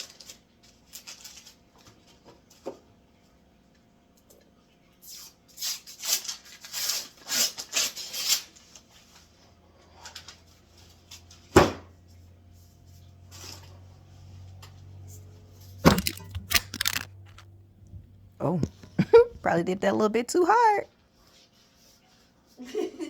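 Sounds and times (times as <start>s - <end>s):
faint steady hum: 14.0s - 21.3s.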